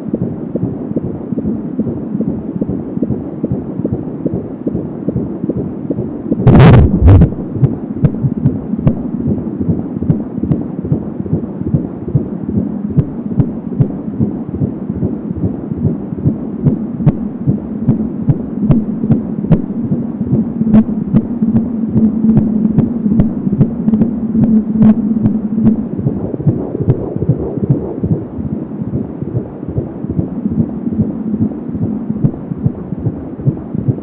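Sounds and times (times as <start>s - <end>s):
fetal heartbeat through doppler: 0.0s - 34.0s
loud crackling burst: 6.4s - 7.4s.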